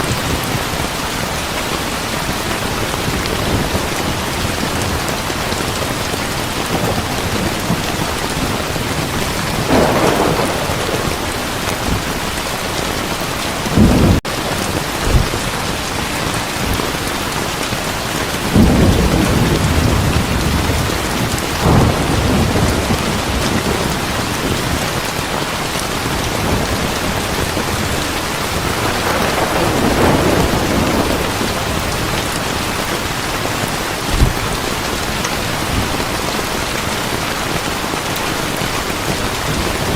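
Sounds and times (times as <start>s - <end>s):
heavy rain: 0.0s - 39.9s
thunder rumbling: 2.2s - 39.9s.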